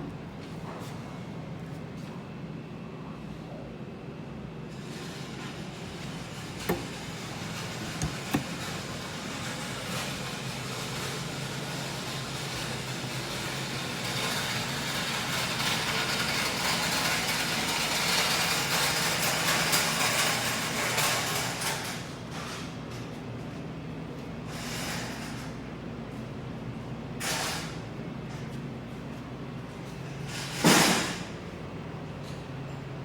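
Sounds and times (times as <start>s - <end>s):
machine motor hum: 6.4s - 10.5s.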